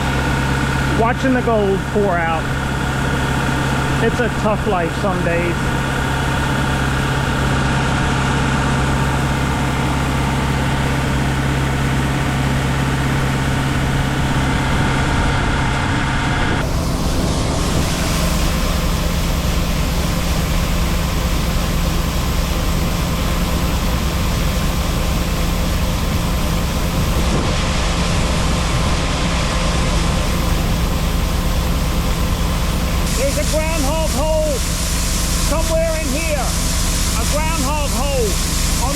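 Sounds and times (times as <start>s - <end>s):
farm machinery engines running: 0.0s - 38.9s.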